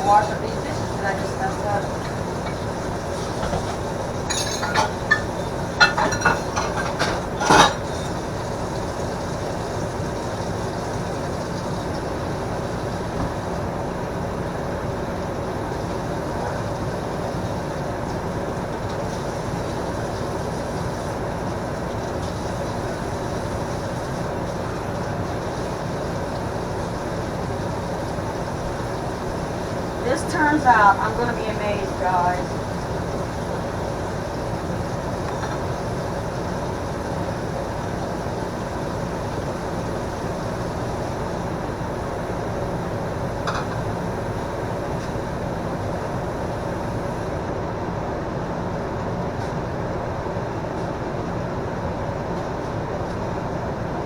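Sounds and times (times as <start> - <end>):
microwave oven humming: 0.0 - 54.0
dishes clinking: 1.8 - 8.3, 43.4 - 43.9.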